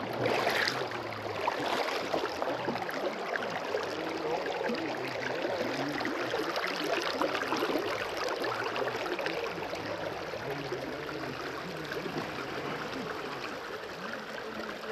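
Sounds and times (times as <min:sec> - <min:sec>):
stream babbling: 0:00.0 - 0:14.9.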